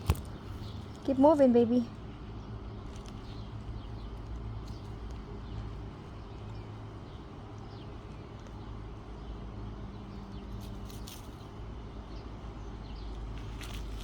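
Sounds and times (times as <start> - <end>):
rustle: 10.1 - 11.6, 13.1 - 14.0.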